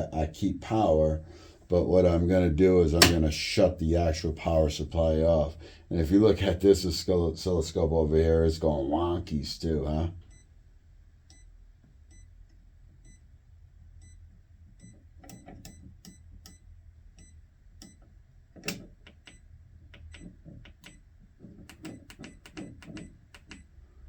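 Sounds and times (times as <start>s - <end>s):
faint low hum: 0.0s - 24.0s
sharp clicks and taps: 3.0s - 3.3s, 18.6s - 23.7s.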